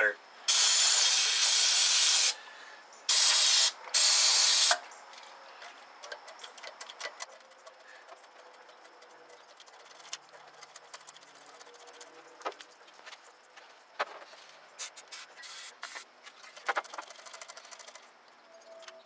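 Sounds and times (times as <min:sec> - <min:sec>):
aerosol spray hissing: 0:00.5 - 0:02.4, 0:03.1 - 0:04.8, 0:14.8 - 0:16.0
small metallic clicks: 0:04.6 - 0:12.1.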